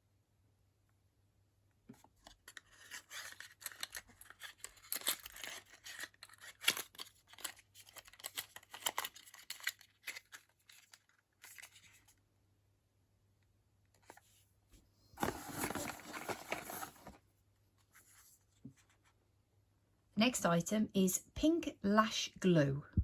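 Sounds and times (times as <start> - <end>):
packaging crackling and rustling: 2.2 - 12.2, 15.2 - 17.2.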